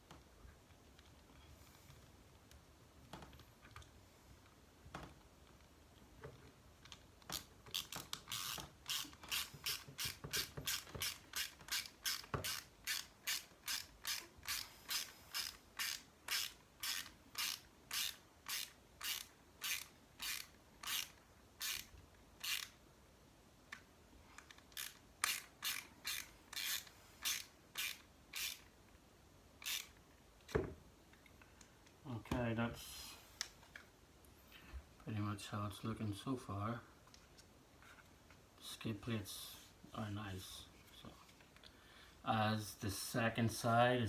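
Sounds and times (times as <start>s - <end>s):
screwdriver ratchet clicks: 7.3s - 22.7s, 24.5s - 28.7s, 29.6s - 30.0s.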